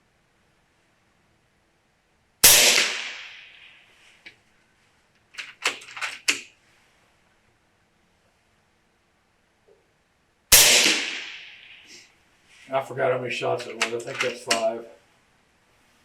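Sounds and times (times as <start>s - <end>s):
air rifle shot: 2.4s - 3.8s, 10.5s - 12.0s
rifle action metallic clacks: 5.4s - 6.5s, 13.6s - 14.7s.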